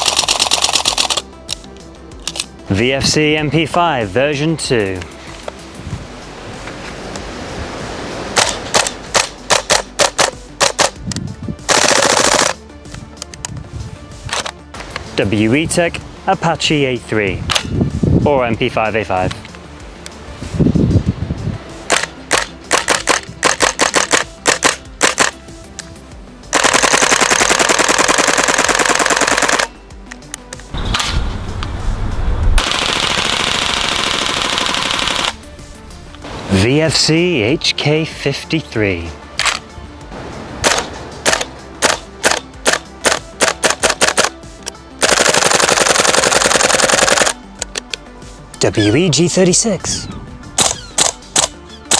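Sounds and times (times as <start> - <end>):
airsoft gun full-auto burst: 11.7 - 12.6, 26.5 - 29.7, 32.6 - 35.4, 45.0 - 47.4.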